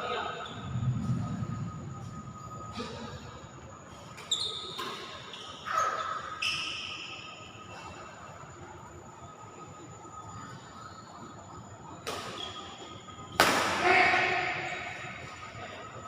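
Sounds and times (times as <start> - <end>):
shoes squeaking on court: 4.2 - 7.2.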